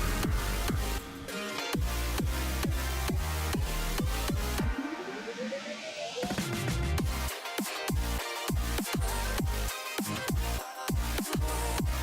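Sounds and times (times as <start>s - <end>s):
falling bass hits: 0.0s - 1.2s
electronic dance music: 0.0s - 12.0s.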